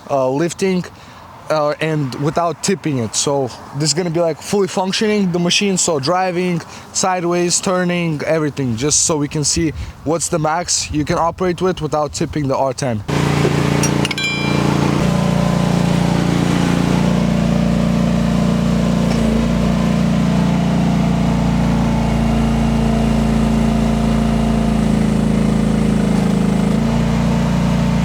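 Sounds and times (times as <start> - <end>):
mini excavator engine running: 13.1 - 28.0.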